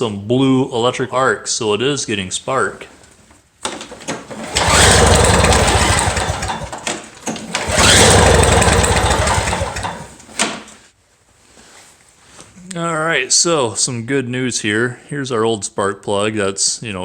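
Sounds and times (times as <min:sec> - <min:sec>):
recoil starter pull: 0:03.6 - 0:10.4
engine cranking with fast pulsing: 0:04.3 - 0:10.2.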